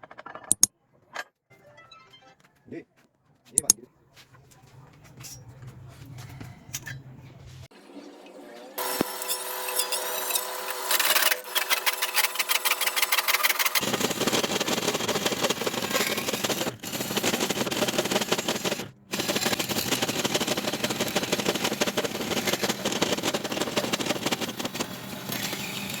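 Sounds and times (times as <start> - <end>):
milling machine cutting: 8.8 - 26.0.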